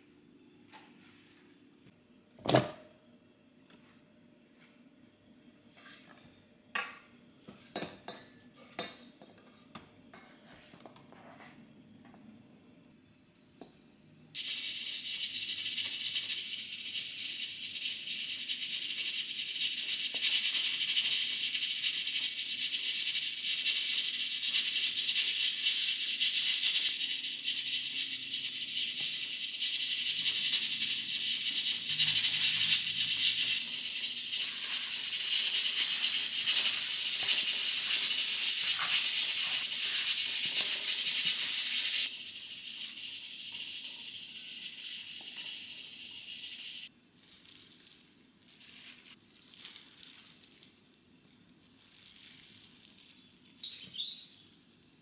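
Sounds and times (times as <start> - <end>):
food sizzling in oil: 14.4 - 46.9.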